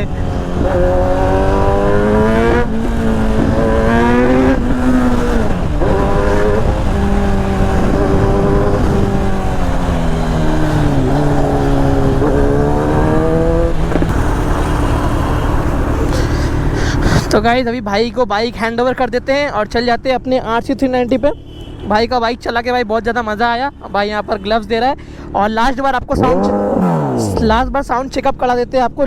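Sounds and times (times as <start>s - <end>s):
motorcycle engine accelerating: 0.0s - 17.6s, 25.6s - 28.2s.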